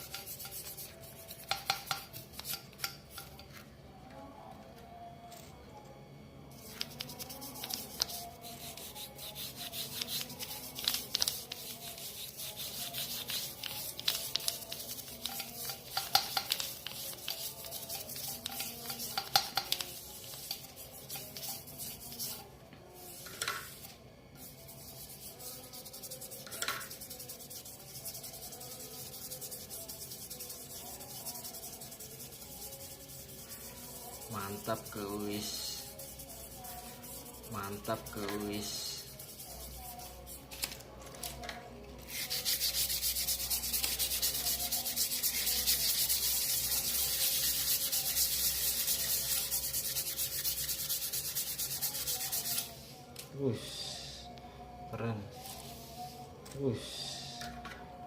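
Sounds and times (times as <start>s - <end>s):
scrubbing metal by hand: 0.0s - 3.3s, 6.6s - 22.4s, 24.4s - 35.0s, 42.1s - 52.7s.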